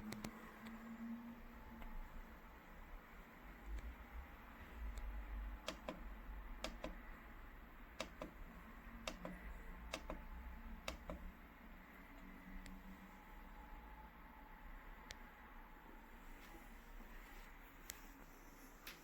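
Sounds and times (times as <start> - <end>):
plastic buttons clicking: 5.7 - 7.1, 8.0 - 8.4, 9.0 - 10.2, 10.8 - 11.3.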